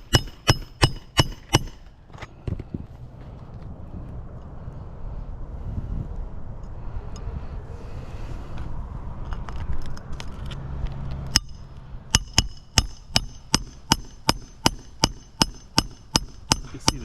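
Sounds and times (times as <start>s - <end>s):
hammer tapping: 0.0s - 1.8s, 12.2s - 17.0s.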